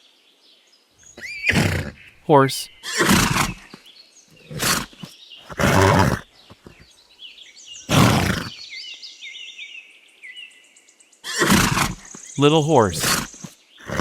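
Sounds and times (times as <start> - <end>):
small birds chirping: 1.0 - 14.0
horse snorting: 1.2 - 2.1, 2.8 - 3.8, 4.4 - 6.9, 7.9 - 8.5, 11.3 - 14.0.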